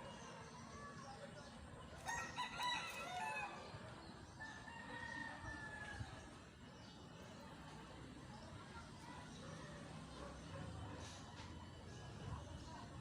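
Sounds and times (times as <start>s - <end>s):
faint rooster crowing: 2.0s - 3.8s.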